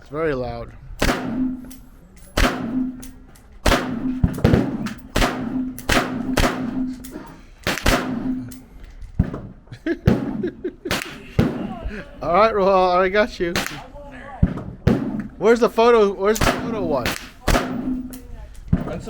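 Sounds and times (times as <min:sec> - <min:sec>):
faint gunshots: 0:01.0 - 0:01.6, 0:03.6 - 0:06.9, 0:07.7 - 0:08.4, 0:13.5 - 0:15.3, 0:16.4 - 0:18.1
pistol shots: 0:01.0 - 0:01.7, 0:02.4 - 0:08.4, 0:10.1 - 0:11.7, 0:13.5 - 0:13.9, 0:16.4 - 0:18.2.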